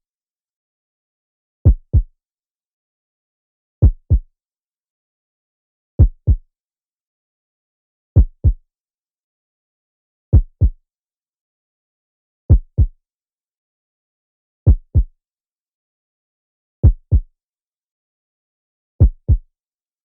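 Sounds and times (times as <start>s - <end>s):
heartbeat double thump: 3.8s - 4.2s, 12.5s - 12.9s, 14.7s - 15.1s, 16.8s - 17.3s, 19.0s - 19.4s.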